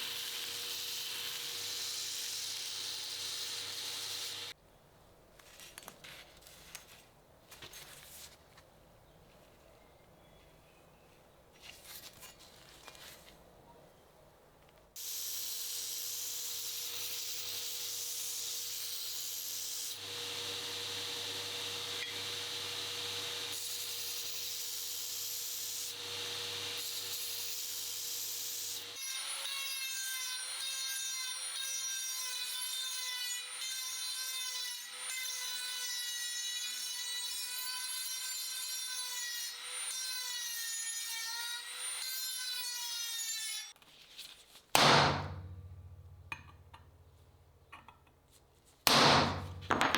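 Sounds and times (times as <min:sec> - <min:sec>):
power tool grinding metal: 0:00.0 - 0:04.6.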